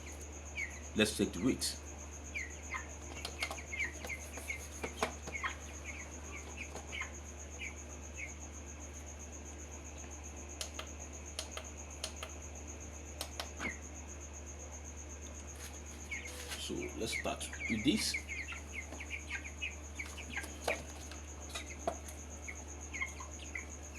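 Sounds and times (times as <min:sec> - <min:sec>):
chicks peeping: 0:00.0 - 0:23.9
sharp clicks: 0:13.2 - 0:13.5.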